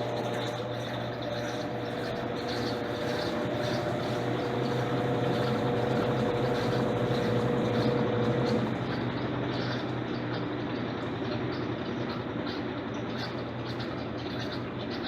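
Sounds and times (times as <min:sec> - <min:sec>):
washing machine hum and mechanical noise: 0:00.0 - 0:15.0
washing machine motor whine: 0:00.0 - 0:15.0.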